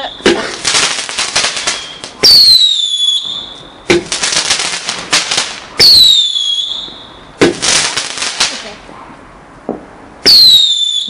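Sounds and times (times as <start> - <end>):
firework crackling pops: 0.0 - 8.8, 10.2 - 11.0
firework whistle falling in pitch: 5.8 - 7.2, 10.3 - 11.0.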